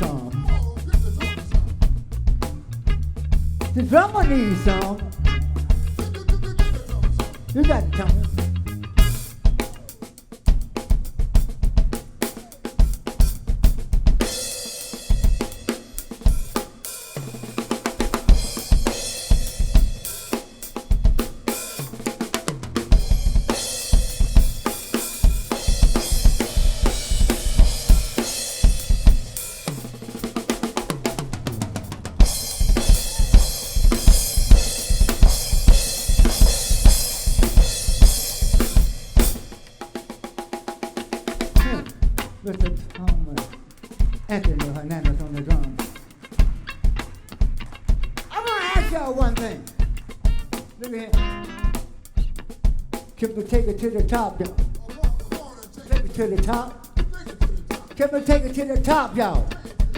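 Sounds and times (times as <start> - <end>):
snare and tom fills: 5.8 - 42.5
crashing cymbals: 14.2 - 41.4.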